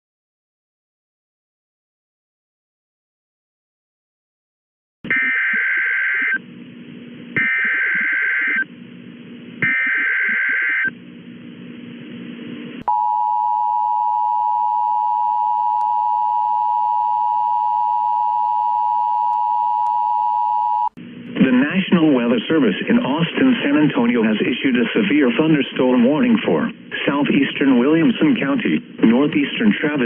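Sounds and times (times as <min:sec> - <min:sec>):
long steady attention tone: 0:12.8 - 0:22.2.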